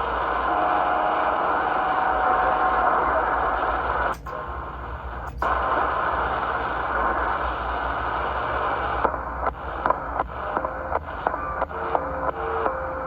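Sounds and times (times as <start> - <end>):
radio static hiss: 0.0 - 13.0
radio clicks: 3.2 - 12.8.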